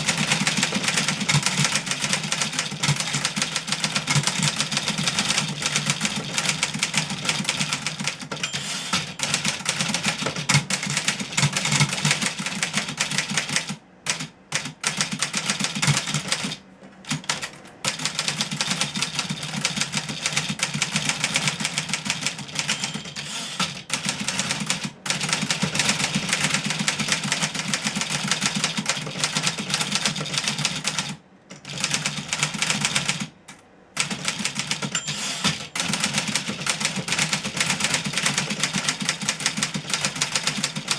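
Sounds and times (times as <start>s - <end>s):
typewriter key strikes: 0.0s - 13.2s, 17.2s - 25.7s, 34.0s - 40.9s.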